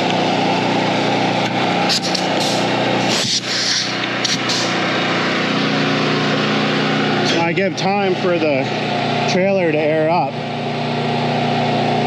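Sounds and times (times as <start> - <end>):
diesel truck engine running: 0.0 - 12.0
compressed air hissing: 1.8 - 4.9.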